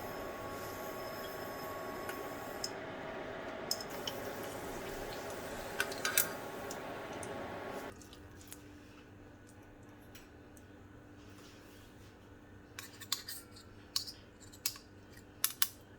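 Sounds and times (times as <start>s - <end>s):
steady hiss: 0.0s - 7.9s
kitchen utensils clinking: 3.6s - 7.9s.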